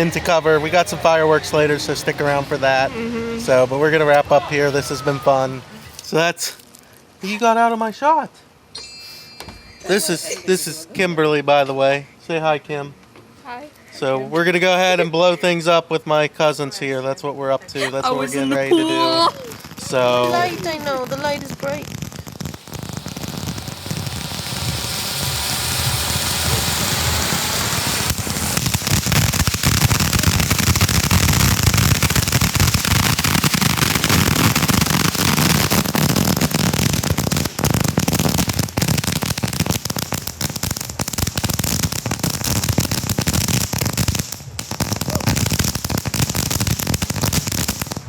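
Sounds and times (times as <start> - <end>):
fireworks crackling and popping: 0.0 - 2.8, 3.5 - 6.8, 17.8 - 48.0.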